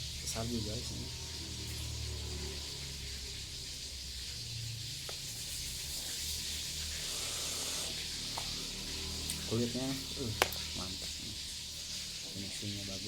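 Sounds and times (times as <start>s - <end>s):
steady hiss: 3.2s - 13.0s.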